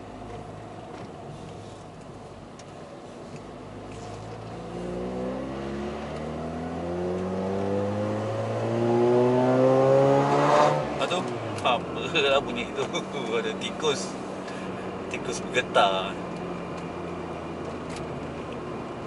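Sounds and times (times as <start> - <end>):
rotary engine revving: 3.9 - 11.7.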